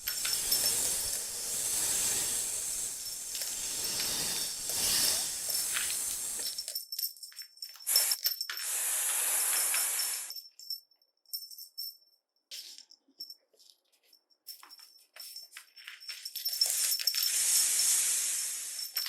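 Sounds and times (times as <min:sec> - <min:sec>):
snake hissing: 0:00.0 - 0:06.7, 0:08.6 - 0:10.3, 0:17.3 - 0:19.0
rattling and jingling: 0:00.0 - 0:08.7, 0:10.3 - 0:13.7, 0:14.4 - 0:17.4.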